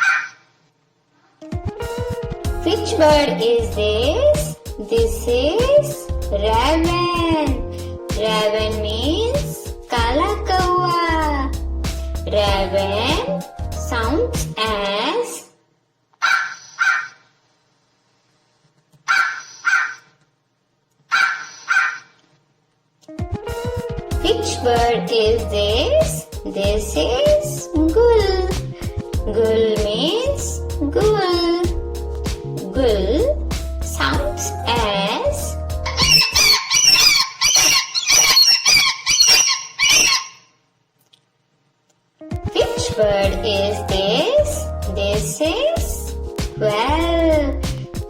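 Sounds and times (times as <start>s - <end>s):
raven croaking: 16.2s - 17.3s, 19.1s - 20.2s, 21.1s - 22.2s, 35.8s - 40.5s
gull calling: 35.8s - 40.6s.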